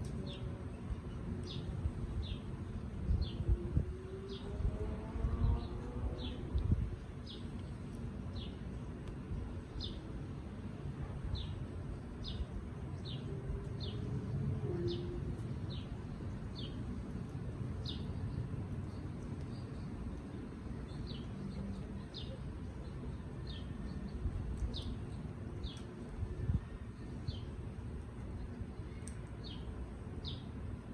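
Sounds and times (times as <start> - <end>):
steady low rumble: 0.0 - 30.9
bird chirping: 17.8 - 27.6, 28.3 - 30.6.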